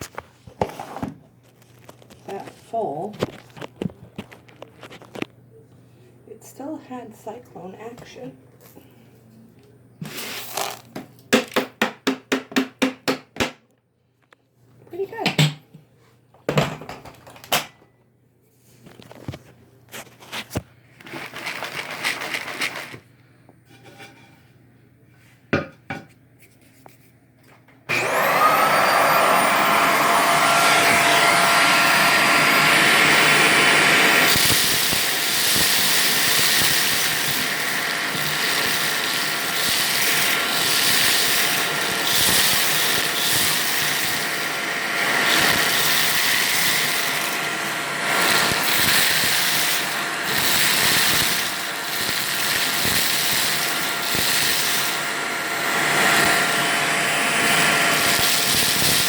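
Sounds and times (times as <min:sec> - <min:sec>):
vacuum cleaner motor whine: 0:27.9 - 0:59.0.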